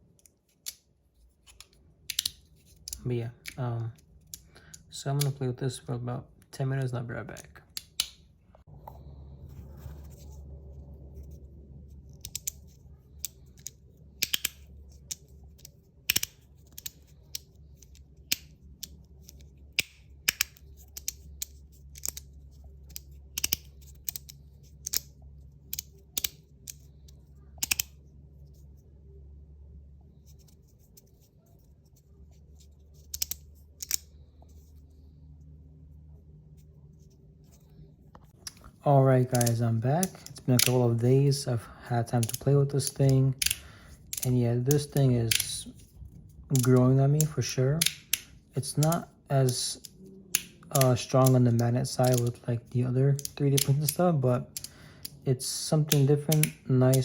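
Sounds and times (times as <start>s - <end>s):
low steady hum: 0.0s - 57.0s.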